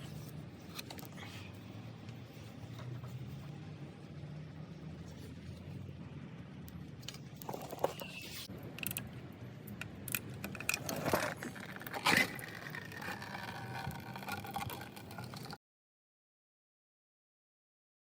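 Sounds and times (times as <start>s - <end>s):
scraping and rattling handling noises: 10.4s - 15.6s.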